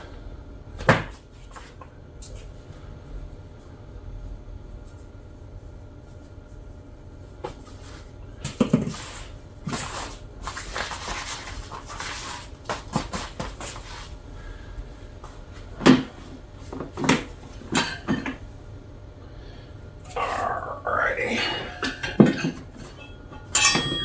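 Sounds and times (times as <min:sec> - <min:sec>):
rubbing and rustling of rubber: 0:08.8 - 0:14.2.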